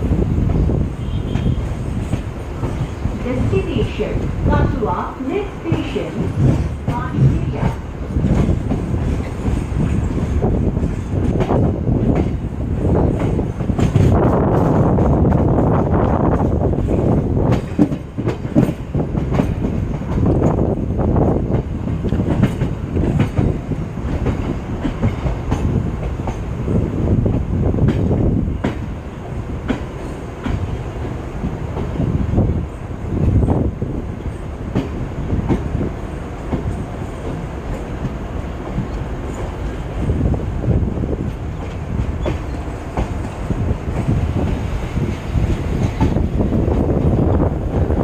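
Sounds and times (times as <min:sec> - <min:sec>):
train rumble from on board: 0:00.0 - 0:48.0
wheels clacking over rail joints: 0:00.4 - 0:26.6, 0:27.3 - 0:32.0, 0:41.2 - 0:48.0.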